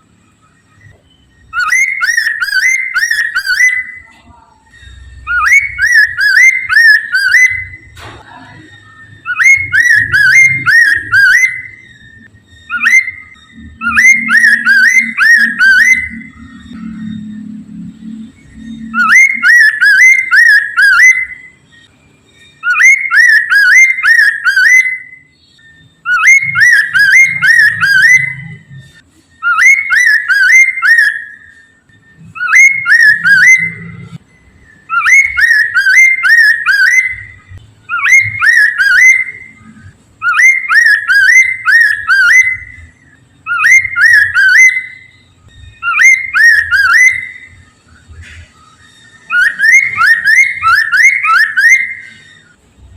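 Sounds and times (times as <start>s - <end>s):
bird singing whistled notes: 0.1s - 52.9s.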